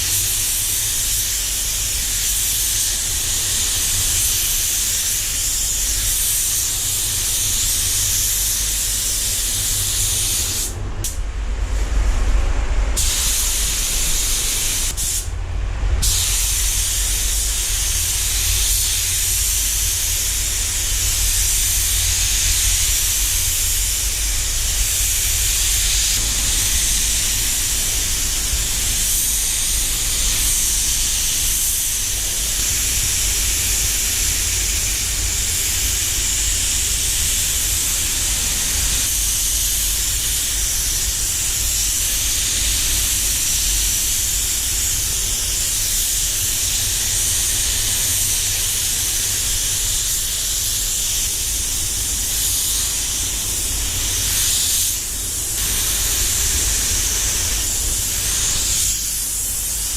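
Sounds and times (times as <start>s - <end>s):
spray gun air hissing: 0.0s - 12.0s, 13.0s - 15.3s, 16.0s - 59.9s
low rumble: 10.4s - 30.2s.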